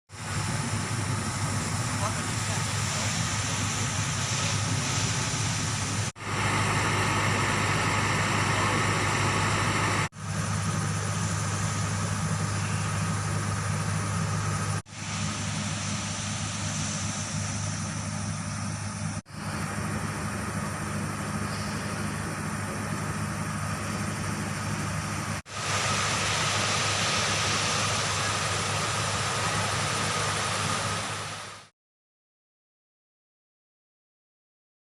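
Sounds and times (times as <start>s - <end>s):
engine idling: 0.1s - 31.7s.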